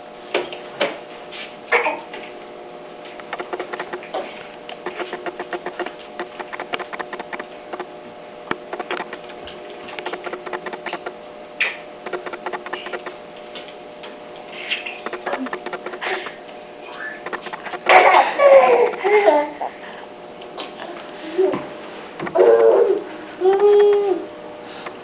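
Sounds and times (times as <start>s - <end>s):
steady hum: 1.0s - 25.0s.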